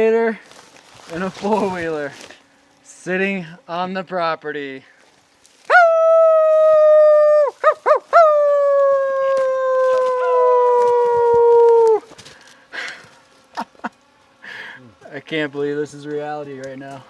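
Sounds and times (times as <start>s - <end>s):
wolf-like howl: 5.7s - 12.1s.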